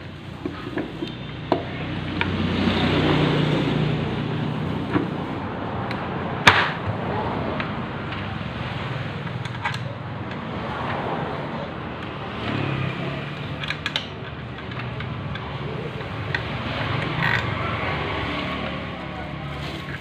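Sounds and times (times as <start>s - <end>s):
sharp metallic clicks: 12.0s - 17.6s.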